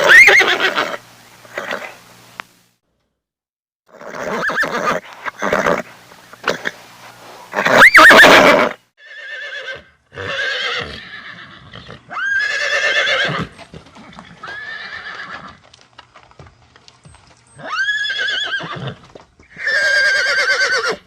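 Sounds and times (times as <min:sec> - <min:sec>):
horse neighing: 0:00.0 - 0:02.0, 0:03.9 - 0:06.8, 0:07.5 - 0:15.6, 0:17.6 - 0:21.0.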